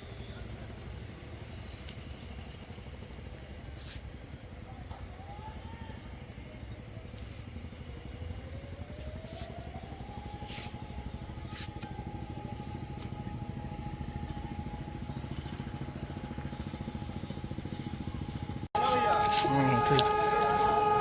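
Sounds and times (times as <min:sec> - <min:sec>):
low engine-like rumble: 0:00.0 - 0:21.0
warning siren rising tone: 0:08.5 - 0:21.0.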